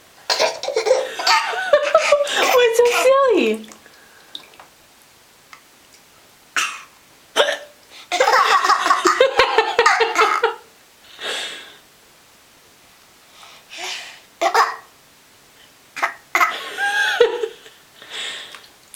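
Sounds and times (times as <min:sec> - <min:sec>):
baby laughing: 0:00.3 - 0:03.3, 0:08.1 - 0:10.6.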